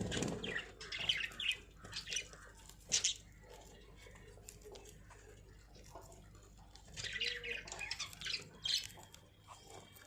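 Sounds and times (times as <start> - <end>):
budgerigars chirping: 0.0 - 4.2, 6.9 - 9.9.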